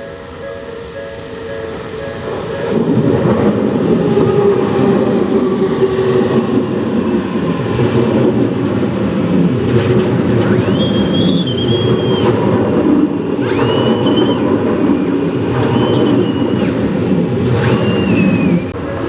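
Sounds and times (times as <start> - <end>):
level-crossing warning bell: 0.0 - 6.9, 18.8 - 19.0
train rumbling past: 0.0 - 19.0.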